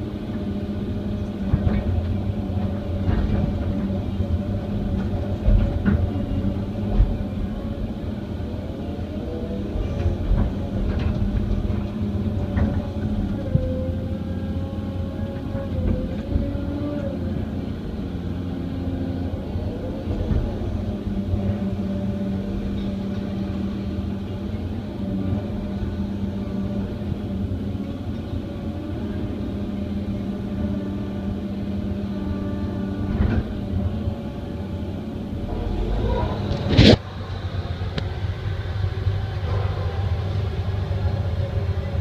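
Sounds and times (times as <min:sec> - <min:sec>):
excavator diesel engine running: 0:00.0 - 0:42.0
hydraulic whine shifting in pitch: 0:32.0 - 0:41.1.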